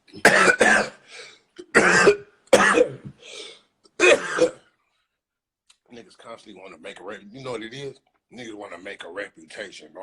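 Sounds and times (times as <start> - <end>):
man coughing hard: 0.2 - 1.0, 1.6 - 3.2, 4.0 - 4.7.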